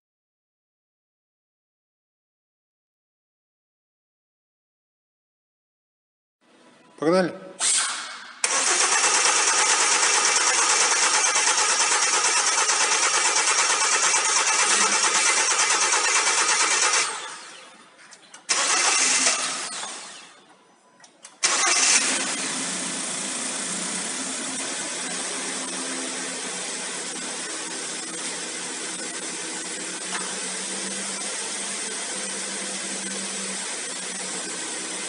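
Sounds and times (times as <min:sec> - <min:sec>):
car engine starting and idling: 0:07.6 - 0:17.6, 0:18.5 - 0:20.3, 0:21.3 - 0:35.0.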